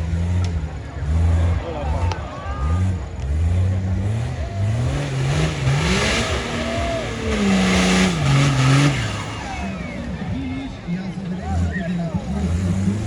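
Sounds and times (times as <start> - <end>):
off-road vehicle engine revving: 0.0 - 13.0.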